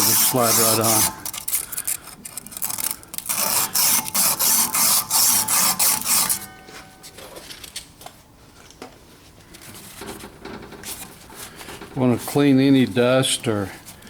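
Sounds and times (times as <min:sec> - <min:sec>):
sandpaper rubbing on steel shaft: 0:00.0 - 0:06.5.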